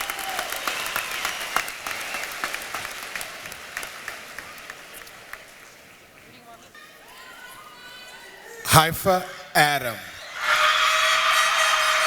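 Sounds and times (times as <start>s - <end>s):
audience applauding: 0.0s - 6.4s, 9.6s - 12.0s.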